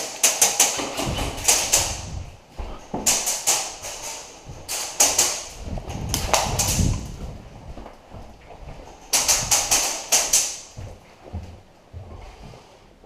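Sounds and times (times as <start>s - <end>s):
airsoft guns firing: 0.0s - 2.1s, 3.0s - 5.6s, 9.1s - 10.7s
low thuds: 1.0s - 3.3s, 3.9s - 9.8s.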